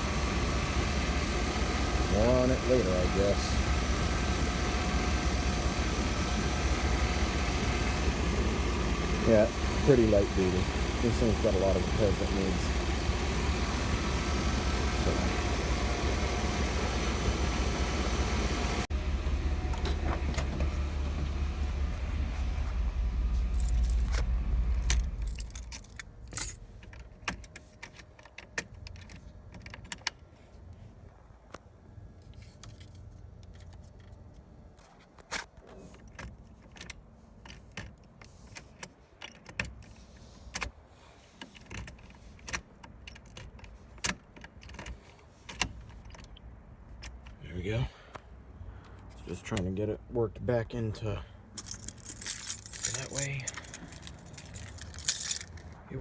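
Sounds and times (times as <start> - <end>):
car engine idling: 0.0 - 27.3, 51.0 - 56.0
keys jingling: 23.5 - 30.0, 51.5 - 55.7.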